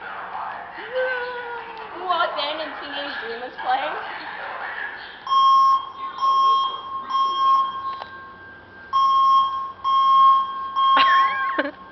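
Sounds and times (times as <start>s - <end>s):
fire alarm beeping: 5.2s - 11.9s.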